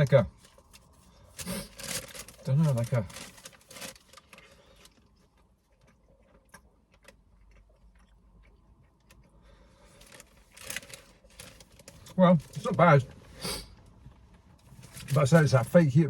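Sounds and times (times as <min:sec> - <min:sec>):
chewing crispy pie crust: 0:00.4 - 0:13.0.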